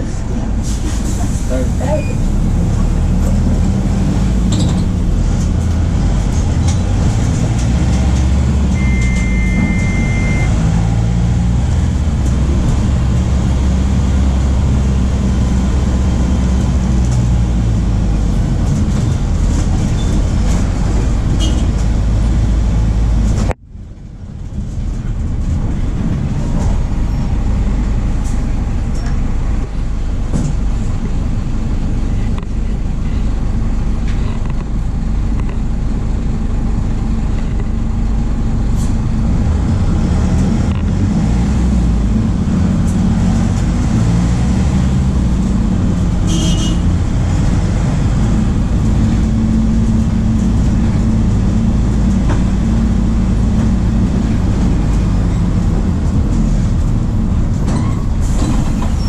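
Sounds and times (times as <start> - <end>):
bus diesel engine rumbling: 0.0 - 59.0
electronic beep: 8.8 - 10.5.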